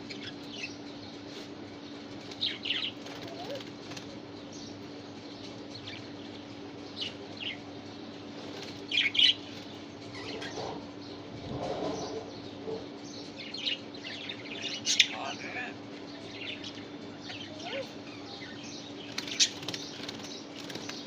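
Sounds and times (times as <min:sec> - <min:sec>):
steady low hum: 0:00.0 - 0:21.0
budgerigars chirping: 0:16.4 - 0:21.0.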